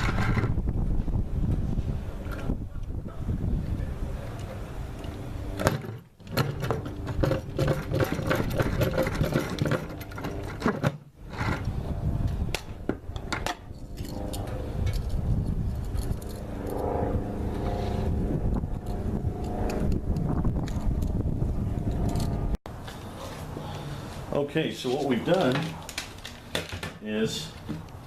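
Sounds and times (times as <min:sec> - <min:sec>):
hand drill grinding through plastic: 0:06.2 - 0:11.8.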